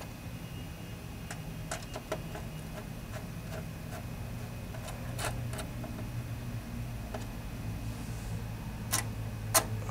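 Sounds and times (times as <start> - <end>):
steady low hum: 0.0 - 9.9.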